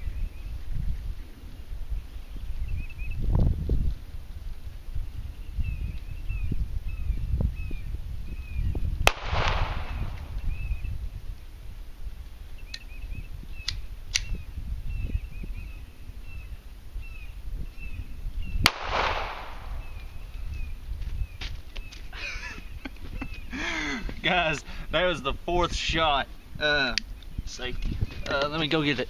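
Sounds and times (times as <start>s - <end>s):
small birds chirping: 0.0s - 29.0s
pistol shots: 9.1s - 10.3s, 18.7s - 20.0s.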